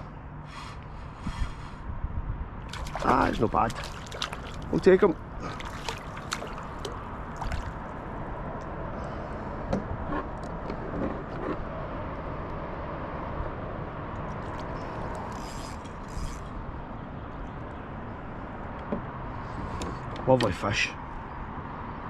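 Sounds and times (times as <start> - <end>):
clicks and knocks handling fish: 5.4 - 7.7.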